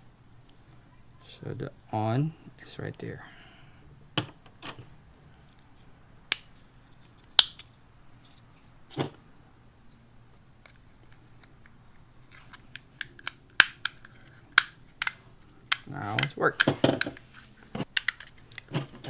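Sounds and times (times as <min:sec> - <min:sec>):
plastic switch clicks: 0:07.4 - 0:07.7, 0:13.0 - 0:14.0, 0:14.6 - 0:17.2.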